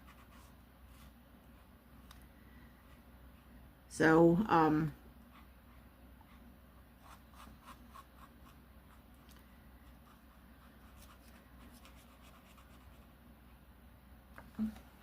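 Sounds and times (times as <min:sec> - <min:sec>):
marker scratching on paper: 0:00.0 - 0:01.7, 0:05.2 - 0:09.0, 0:09.8 - 0:13.0.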